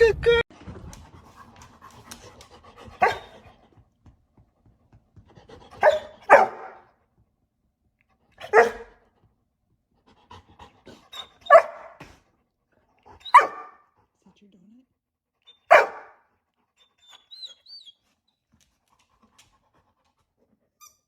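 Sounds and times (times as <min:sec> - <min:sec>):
dog barking: 0:03.0 - 0:03.4, 0:05.8 - 0:06.9, 0:08.4 - 0:09.0, 0:11.4 - 0:12.1, 0:13.2 - 0:13.8, 0:15.7 - 0:16.2.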